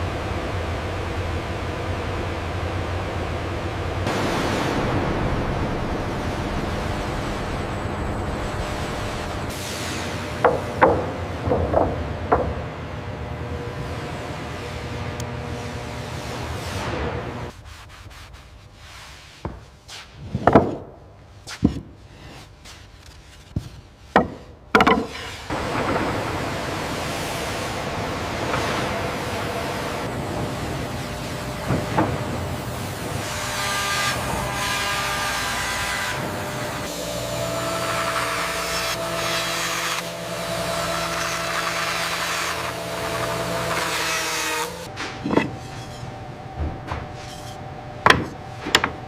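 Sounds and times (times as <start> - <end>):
woodworking machinery humming: 0.0 - 17.5, 23.5 - 49.0
wooden knocks: 10.4 - 12.7, 23.6 - 26.3, 45.0 - 49.0.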